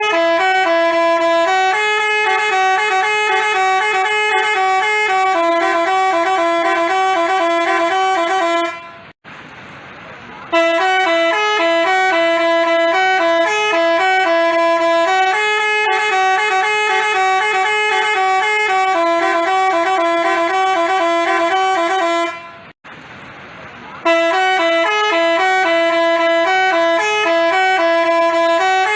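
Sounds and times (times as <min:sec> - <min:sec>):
multi-tone bus horn playing tune: 0:00.0 - 0:09.2, 0:10.5 - 0:22.8, 0:24.0 - 0:28.9.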